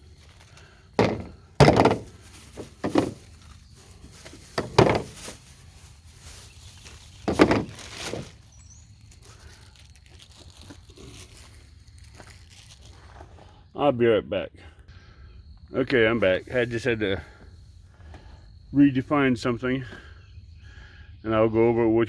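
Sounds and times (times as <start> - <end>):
pipe pieces knocking together: 1.0 - 3.4, 4.4 - 5.4, 7.2 - 8.3.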